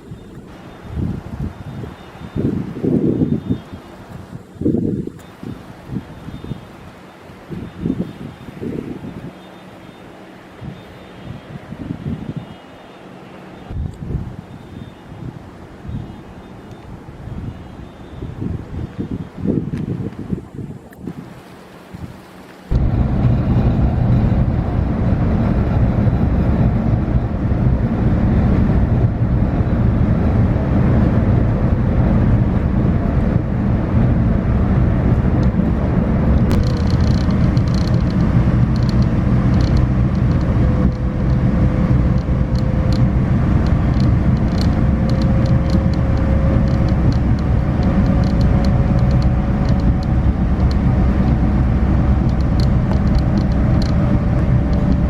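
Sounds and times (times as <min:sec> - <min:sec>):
faint rising whine: 0:22.7 - 0:55.0
vehicle rumble from inside: 0:22.7 - 0:55.0.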